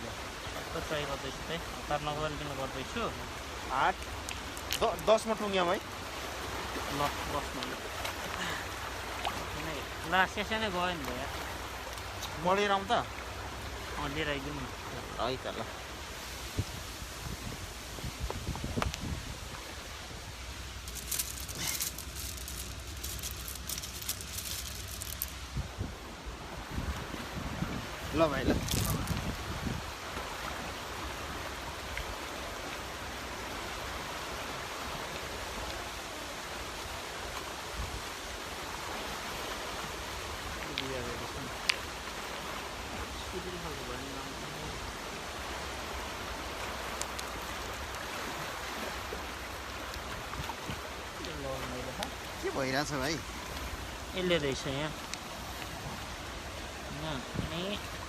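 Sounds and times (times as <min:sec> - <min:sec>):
crackling rustles: 0:03.9 - 0:05.9, 0:18.1 - 0:25.7, 0:28.4 - 0:29.4, 0:46.3 - 0:56.1
outdoor noise: 0:15.7 - 0:40.8
wind rumbling on microphone: 0:16.0 - 0:32.3, 0:44.4 - 0:58.0.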